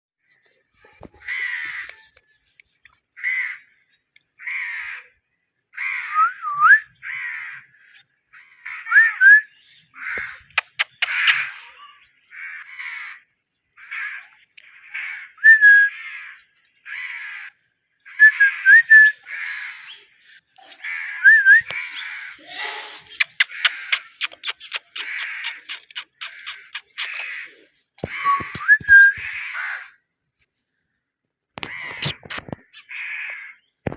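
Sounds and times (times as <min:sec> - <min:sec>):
parrot raspy calls: 0:10.0 - 0:13.2, 0:20.7 - 0:30.0.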